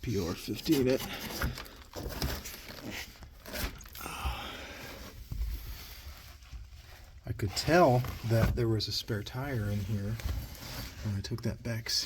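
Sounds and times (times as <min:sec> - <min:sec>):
scraping and rustling in car trunk: 0:04.8 - 0:11.4.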